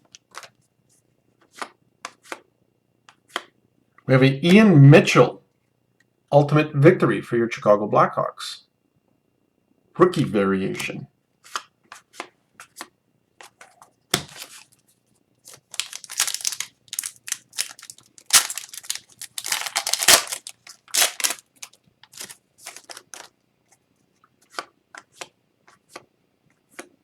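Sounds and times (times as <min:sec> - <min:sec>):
cards clicking: 0:15.5 - 0:23.3
foil wrapper ripping and crinkling: 0:15.5 - 0:23.3.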